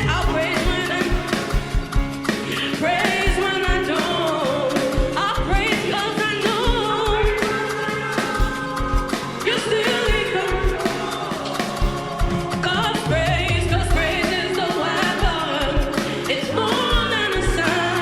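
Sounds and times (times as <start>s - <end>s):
kick drum beat: 0.0s - 2.3s, 8.4s - 9.2s, 10.1s - 10.9s, 15.2s - 16.0s
gospel singing with band: 0.0s - 18.0s.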